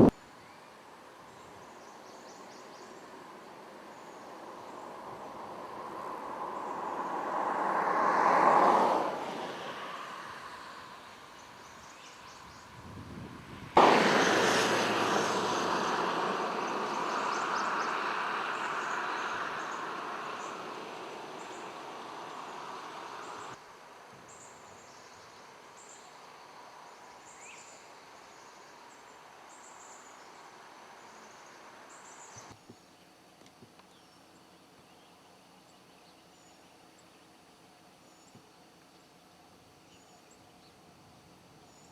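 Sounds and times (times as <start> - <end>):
loud rushing noise: 13.6 - 23.6.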